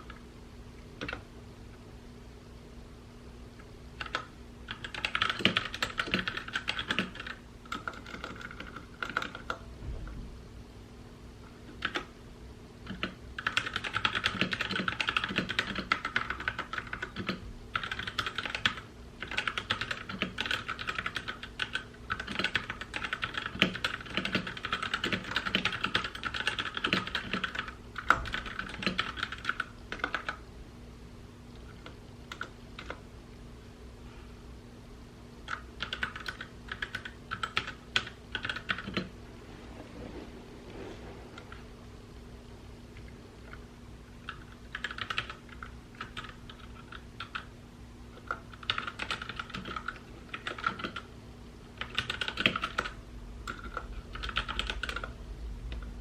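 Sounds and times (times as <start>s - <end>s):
mechanical keyboard typing: 1.0s - 1.2s, 4.0s - 9.6s, 11.7s - 12.1s, 12.8s - 30.4s, 31.6s - 33.0s, 35.5s - 39.1s, 44.2s - 47.5s, 48.2s - 51.1s, 51.8s - 55.2s.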